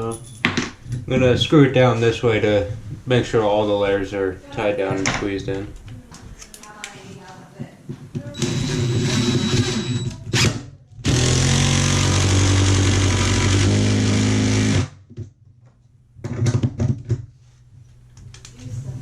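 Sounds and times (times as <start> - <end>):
power drill driving screws: 8.4 - 15.0.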